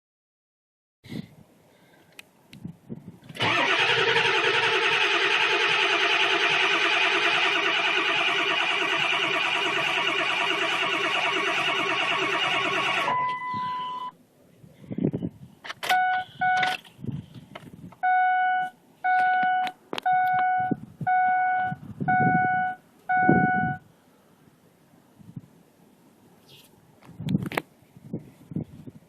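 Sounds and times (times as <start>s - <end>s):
dashboard warning chime beeping: 8.9s - 14.2s, 15.9s - 16.8s, 18.0s - 23.8s.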